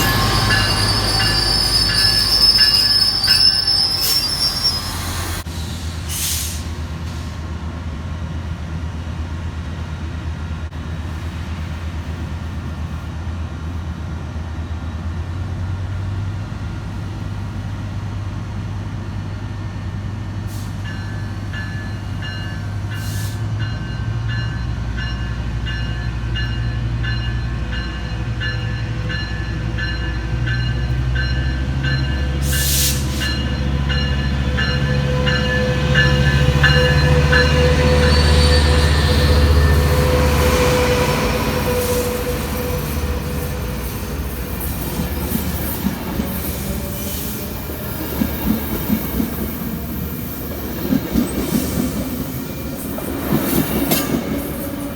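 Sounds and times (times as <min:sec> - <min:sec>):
train bell ringing: 0:00.0 - 0:05.1, 0:20.8 - 0:46.1
train wheels on rails: 0:00.0 - 0:18.4, 0:19.5 - 0:54.9
diesel locomotive engine hum: 0:00.0 - 0:54.9.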